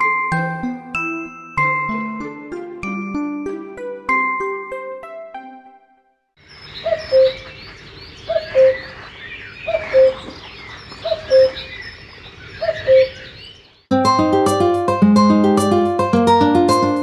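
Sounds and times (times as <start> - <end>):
birds chirping: 6.4 - 17.0.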